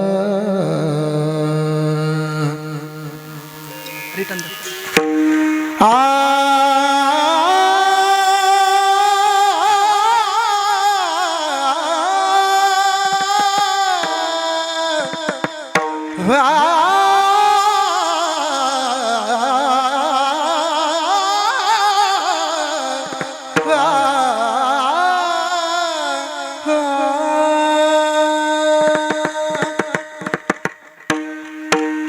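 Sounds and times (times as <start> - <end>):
man singing devotional song: 0.0 - 32.0
hand drum strokes: 3.2 - 6.4, 28.9 - 32.0.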